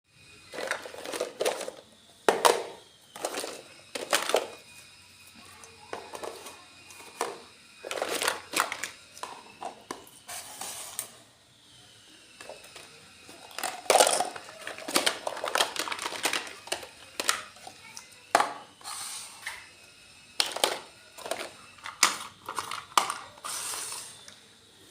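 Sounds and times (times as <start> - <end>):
plastic items tapping and clicking: 0.5 - 4.6, 5.9 - 10.1, 12.4 - 18.6, 20.4 - 23.5
packaging crinkling: 13.5 - 17.5.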